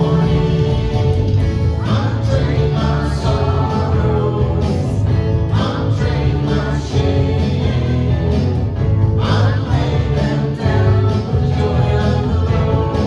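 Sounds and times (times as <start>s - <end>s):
bass line: 0.0s - 13.0s
guitar: 0.0s - 13.0s
voices singing: 0.0s - 13.0s.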